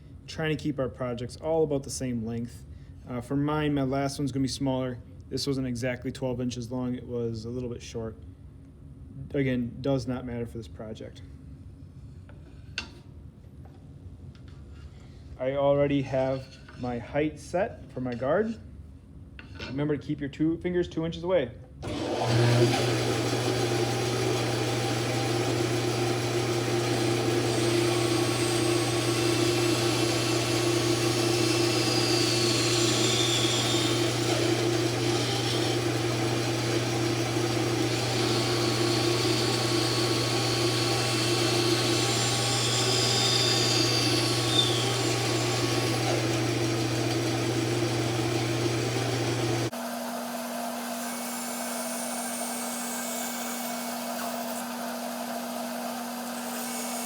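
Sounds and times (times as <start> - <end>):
band saw cutting wood: 21.8 - 57.0.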